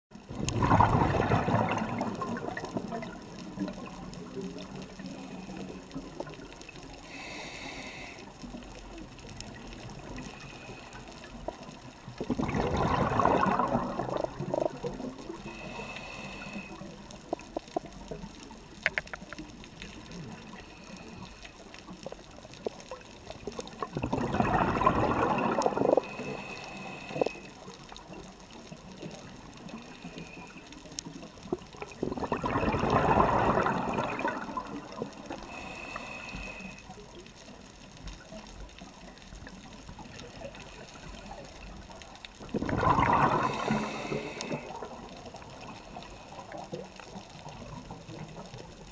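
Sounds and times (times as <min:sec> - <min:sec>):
rush of exhaled bubbles: 0:00.2 - 0:06.5, 0:09.4 - 0:18.3, 0:22.5 - 0:30.3, 0:31.4 - 0:36.2, 0:39.4 - 0:48.7.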